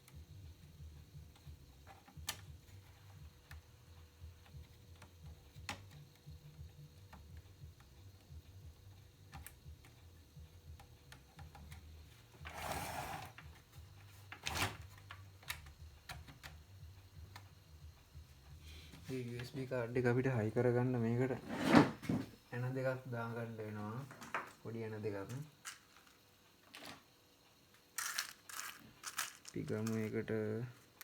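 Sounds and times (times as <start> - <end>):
scraping rustle: 21.4 - 22.4
small parts and tools clicking: 25.3 - 27.1, 27.7 - 31.0.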